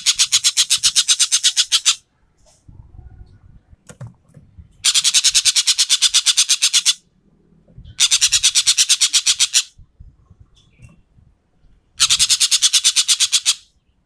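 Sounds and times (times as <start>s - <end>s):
bird rattling call: 0.0s - 2.0s, 4.8s - 7.0s, 8.0s - 9.8s, 12.0s - 13.7s.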